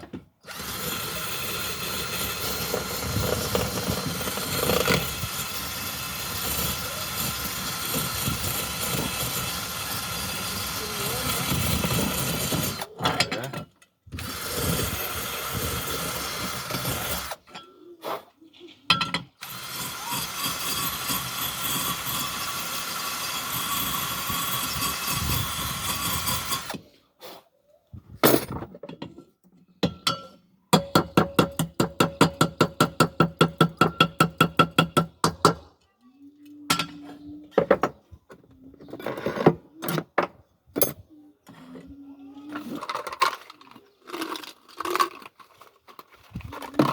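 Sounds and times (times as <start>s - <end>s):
power tool running: 0.4s - 12.9s, 19.4s - 26.8s.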